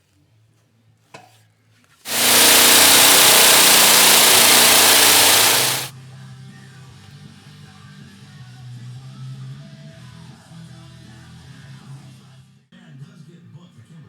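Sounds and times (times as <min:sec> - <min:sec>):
power tool hissing on sheet metal: 0:02.1 - 0:05.9.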